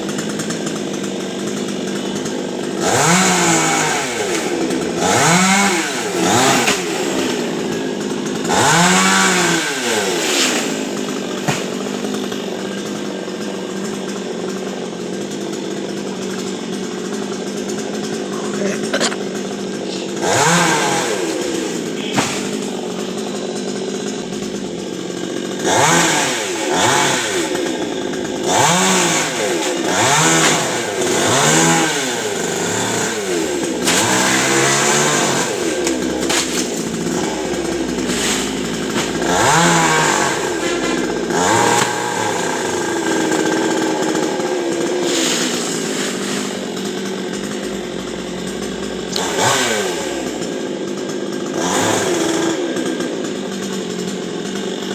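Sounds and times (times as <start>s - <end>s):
chainsaw engine revving: 0.0s - 54.9s.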